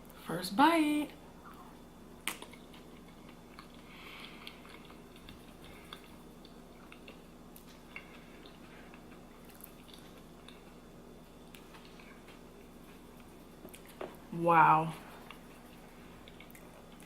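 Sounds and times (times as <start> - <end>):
low steady hum: 0.0 - 17.0
close chewing mouth sounds: 2.3 - 10.8, 15.1 - 17.0.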